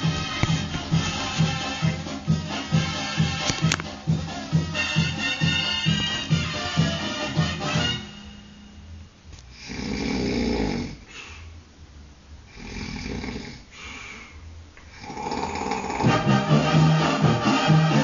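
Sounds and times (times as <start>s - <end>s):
brass band music: 0.0s - 8.6s, 16.1s - 18.0s
person snoring: 9.5s - 11.4s, 12.5s - 14.2s, 14.9s - 17.0s.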